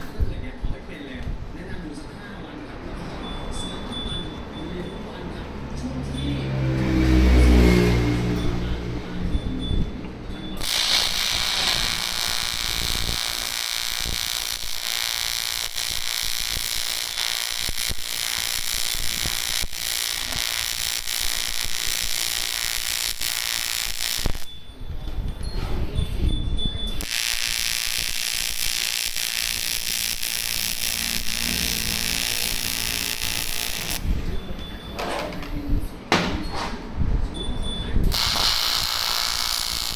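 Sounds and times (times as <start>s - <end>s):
welding arc buzzing: 10.6s - 24.6s, 27.0s - 34.1s, 38.1s - 39.9s.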